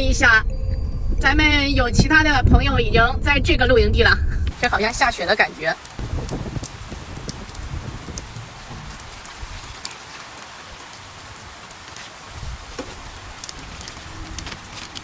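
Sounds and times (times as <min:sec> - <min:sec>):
low rumble: 0:00.0 - 0:04.8
dense rain falling: 0:04.5 - 0:15.0.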